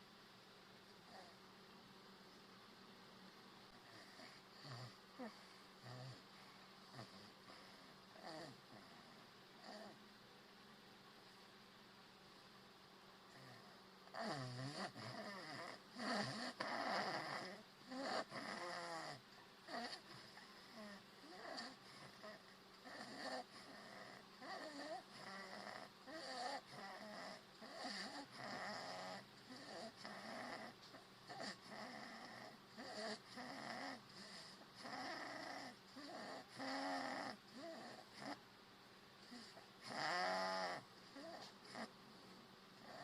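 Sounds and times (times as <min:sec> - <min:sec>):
man snoring: 0:13.3 - 0:20.0, 0:20.7 - 0:38.4, 0:39.3 - 0:41.9.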